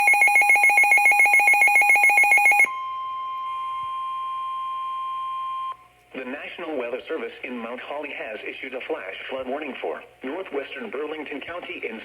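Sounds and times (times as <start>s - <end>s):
rapid electronic beeping alarm: 0.0s - 2.7s
steady warning alarm tone: 0.0s - 5.8s.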